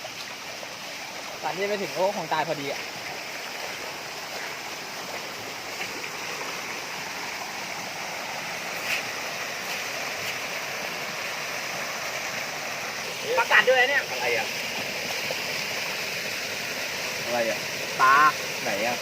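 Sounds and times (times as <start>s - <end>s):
waterfall water rushing: 0.0s - 19.0s.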